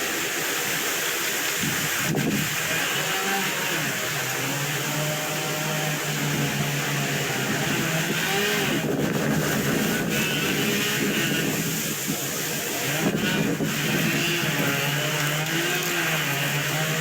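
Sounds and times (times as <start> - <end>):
wind noise on microphone: 1.4 - 3.2, 5.4 - 17.0.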